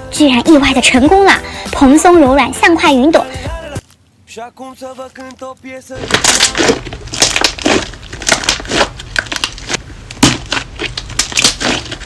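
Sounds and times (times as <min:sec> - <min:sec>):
putty squeezed crackling pops: 0:06.0 - 0:12.0.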